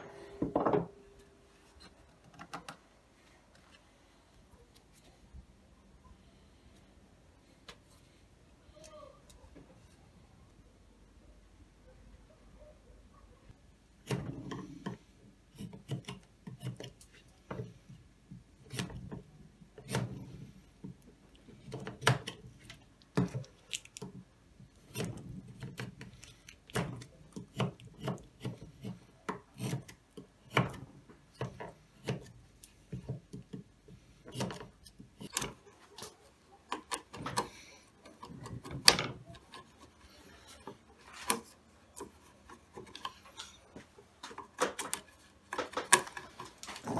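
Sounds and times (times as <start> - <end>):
wood knocking and scraping: 0.4 - 1.0, 26.7 - 46.9.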